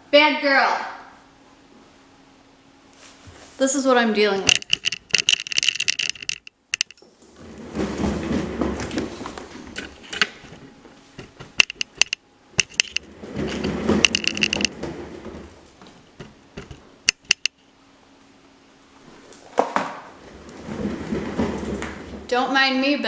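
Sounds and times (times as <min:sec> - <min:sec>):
exercise wheel rumbling and rattling: 0:04.4 - 0:17.6, 0:19.4 - 0:23.0
sharp clicks: 0:11.6 - 0:13.0, 0:16.6 - 0:17.6.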